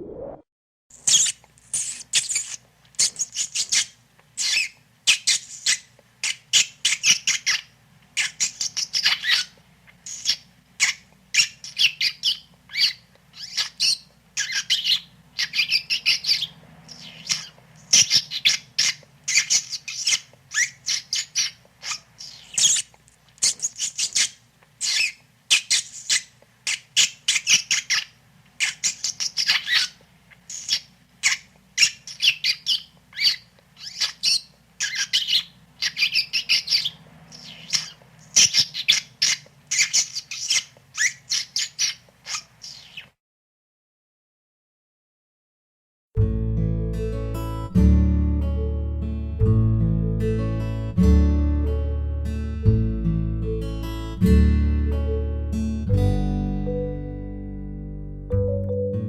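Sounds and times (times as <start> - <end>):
rat squeaking: 1.0 - 43.2.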